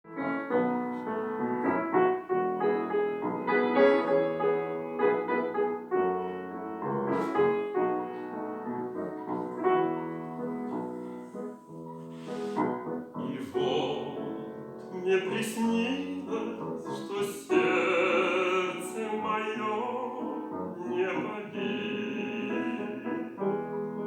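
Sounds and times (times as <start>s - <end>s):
piano playing slow song: 0.1s - 24.0s
brief hissing noises: 12.1s - 12.7s.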